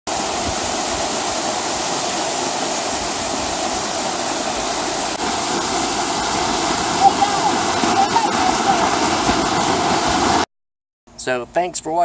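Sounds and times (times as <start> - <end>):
rushing water: 0.1 - 10.5.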